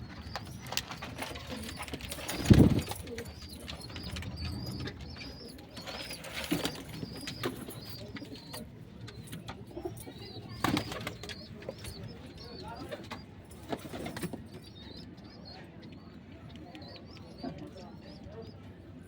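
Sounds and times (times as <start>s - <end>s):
pigeons cooing: 0.1s - 15.0s.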